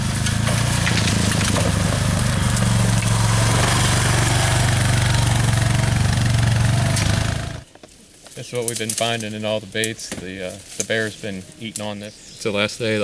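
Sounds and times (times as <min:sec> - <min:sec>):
engine running: 0:00.0 - 0:07.7.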